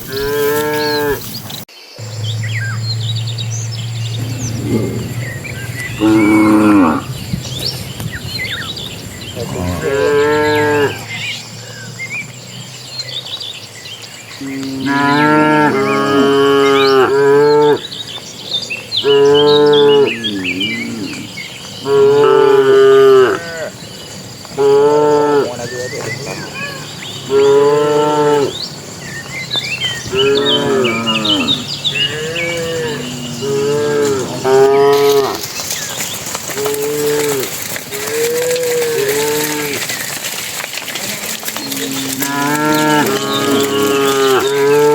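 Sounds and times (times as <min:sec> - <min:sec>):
cattle mooing: 0:00.1 - 0:01.2, 0:02.0 - 0:11.4, 0:14.4 - 0:17.9, 0:19.0 - 0:23.7, 0:30.1 - 0:35.5, 0:36.5 - 0:40.0, 0:41.3 - 0:44.9.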